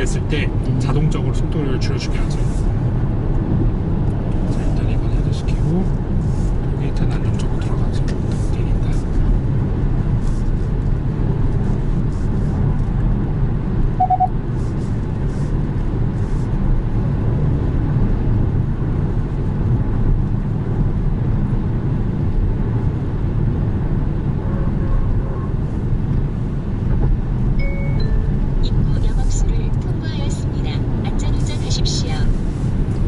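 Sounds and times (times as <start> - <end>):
car cabin road noise: 0.0 - 33.0
short beep: 14.0 - 14.3, 27.6 - 28.4.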